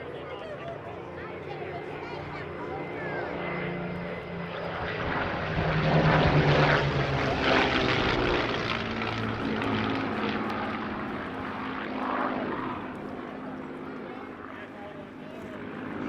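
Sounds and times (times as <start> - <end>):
propeller plane flying past: 0.0 - 16.0.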